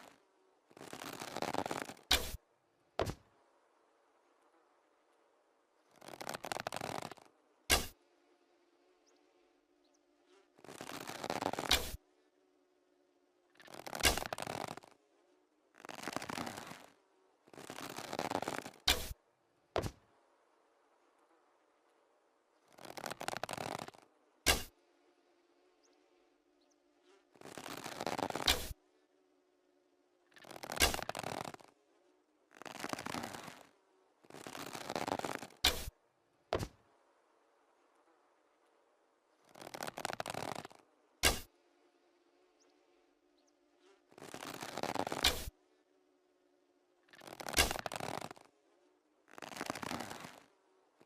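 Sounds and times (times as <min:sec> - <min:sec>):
bow string scraping draw: 0:00.0 - 0:02.4, 0:05.9 - 0:08.0, 0:10.2 - 0:12.0, 0:13.6 - 0:15.0, 0:15.8 - 0:19.2, 0:22.7 - 0:24.9, 0:27.0 - 0:28.8, 0:30.4 - 0:31.8, 0:32.5 - 0:36.0, 0:39.4 - 0:41.7, 0:43.8 - 0:45.6, 0:47.1 - 0:48.6, 0:49.3 - 0:50.6.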